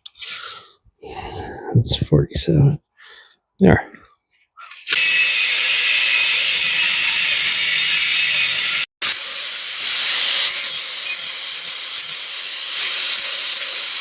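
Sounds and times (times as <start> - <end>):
saw cutting through aluminum: 4.8 - 14.0.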